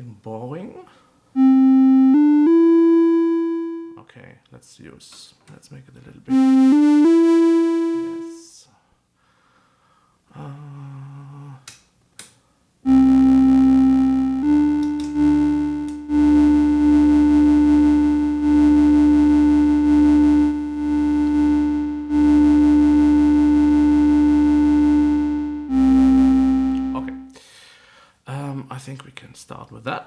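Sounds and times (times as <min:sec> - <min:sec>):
electronic keyboard held notes: 0:01.4 - 0:04.0, 0:06.3 - 0:08.4, 0:12.9 - 0:27.4
clicks: 0:12.9 - 0:18.4.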